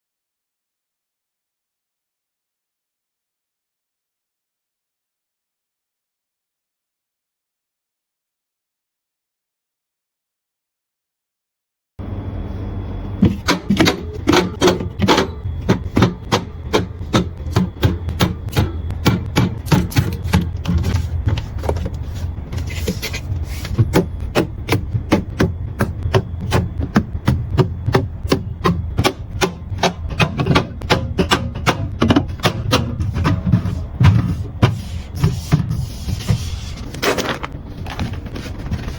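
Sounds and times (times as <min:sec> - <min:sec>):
low steady hum: 0:12.0 - 0:38.9
rapid sharp knocks and taps: 0:23.8 - 0:33.2.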